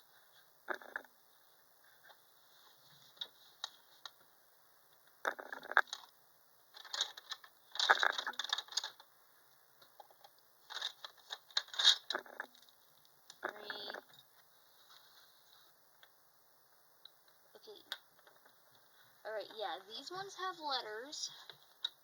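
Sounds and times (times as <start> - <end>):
small metal parts clicking and rattling: 6.7 - 9.0, 10.0 - 12.7.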